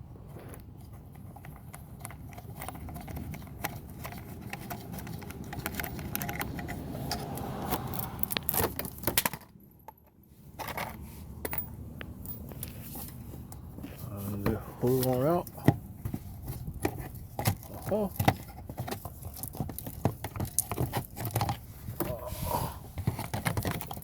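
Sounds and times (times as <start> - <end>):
hand tools clicking on metal bolts: 1.6 - 7.4.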